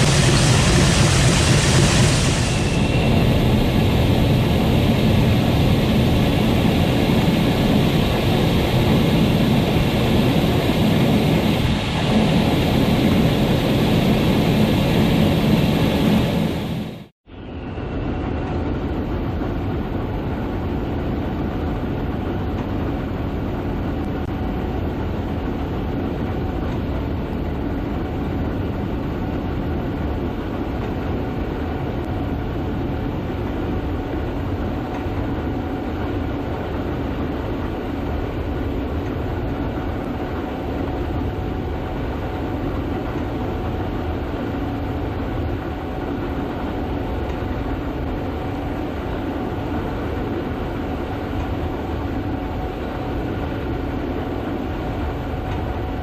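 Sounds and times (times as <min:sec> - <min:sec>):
combine harvester running: 0:00.0 - 0:17.1.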